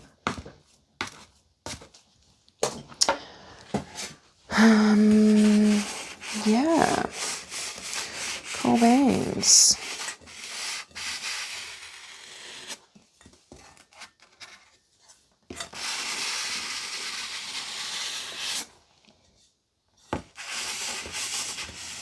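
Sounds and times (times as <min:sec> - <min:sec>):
scraping and rubbing noise: 0:04.6 - 0:10.9.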